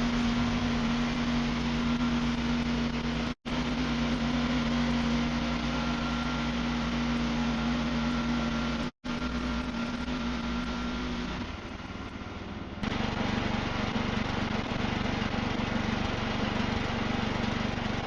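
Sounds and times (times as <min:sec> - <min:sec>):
band sawmill cutting log: 0:00.0 - 0:11.6, 0:12.8 - 0:18.0.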